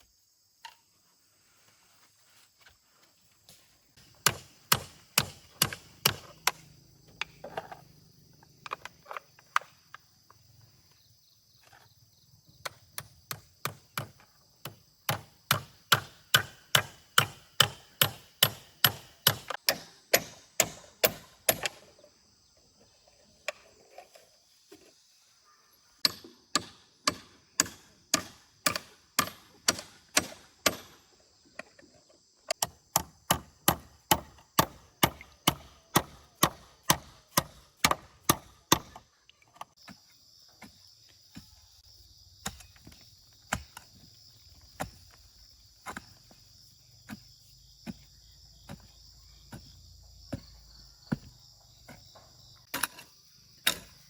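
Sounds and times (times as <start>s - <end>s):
wood being chopped: 4.2s - 6.6s, 13.3s - 21.8s, 26.0s - 31.0s, 32.6s - 39.0s, 44.7s - 45.2s.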